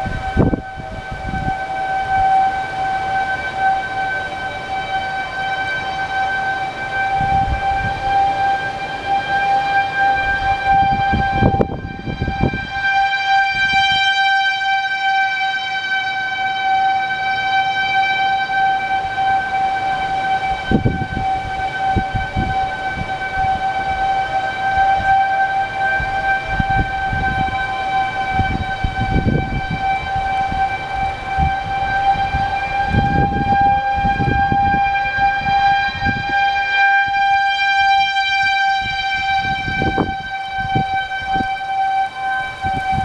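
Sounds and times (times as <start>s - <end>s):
siren steady high tone: 0.0s - 43.0s
low rumbling noise: 16.3s - 43.0s.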